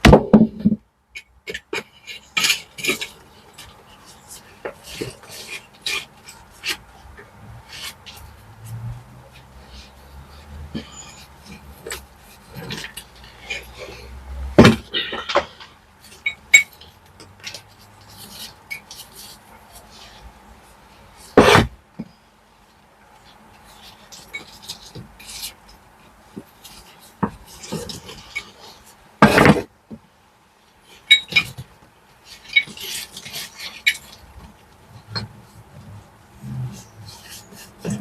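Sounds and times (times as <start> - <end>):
metal tools scraping brick: 1.2 - 20.2, 23.7 - 25.6, 26.6 - 29.7, 30.9 - 31.6, 32.2 - 34.3, 36.4 - 38.0.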